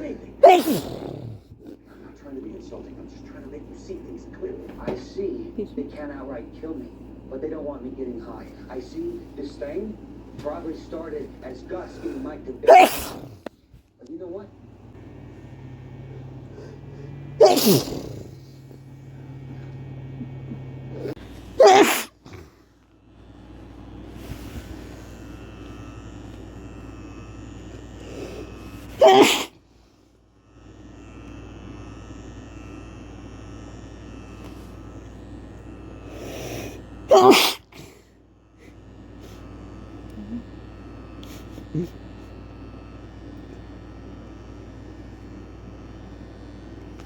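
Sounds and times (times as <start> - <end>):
man sneezing: 0.4 - 1.5, 12.0 - 13.4, 16.3 - 18.8, 19.5 - 22.6, 28.0 - 29.6, 36.1 - 38.0
low hum: 14.4 - 29.0
drawn-in breath: 16.3 - 18.8, 27.9 - 29.0.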